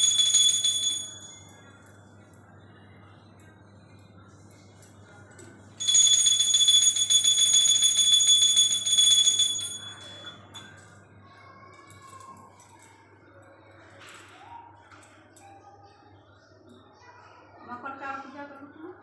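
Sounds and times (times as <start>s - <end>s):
hand bell ringing rapidly: 0.0s - 1.6s, 5.8s - 10.7s.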